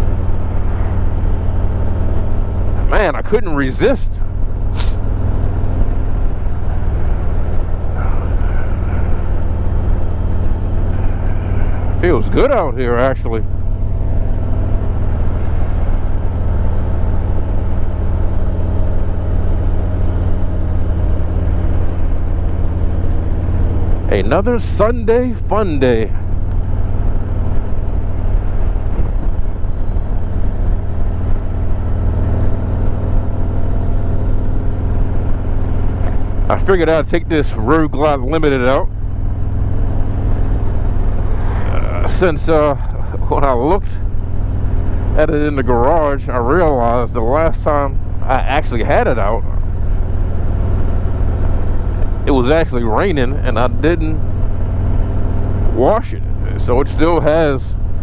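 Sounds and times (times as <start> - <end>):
motorcycle engine running: 0.0 - 58.0
wind and road noise: 0.0 - 58.0
wind rushing noise: 40.3 - 43.2.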